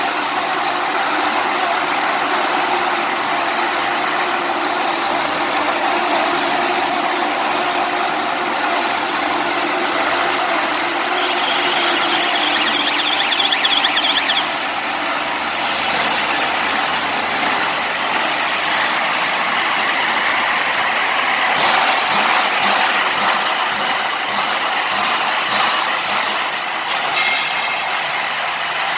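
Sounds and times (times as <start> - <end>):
baling machine running: 0.0 - 28.9
thin high whine: 10.6 - 15.0.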